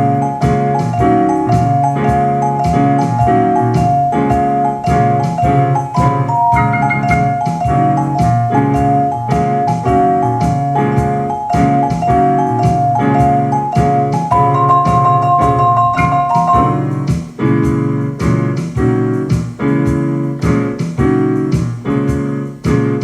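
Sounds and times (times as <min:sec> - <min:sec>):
keyboard notes: 0:00.0 - 0:17.8
steady percussive beat: 0:00.0 - 0:22.8
jazz music: 0:00.0 - 0:23.0
mallet-like pitched notes: 0:01.0 - 0:10.2, 0:11.1 - 0:17.0.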